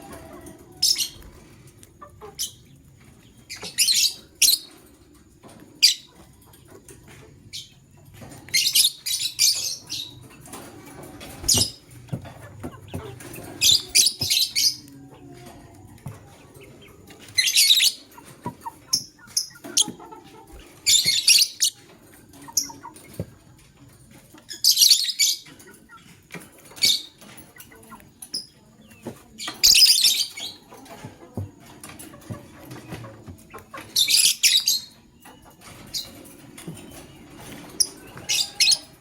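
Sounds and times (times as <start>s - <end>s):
lovebirds shrill chirping: 12.9s - 14.9s, 17.2s - 22.9s, 24.5s - 25.5s, 29.4s - 30.6s.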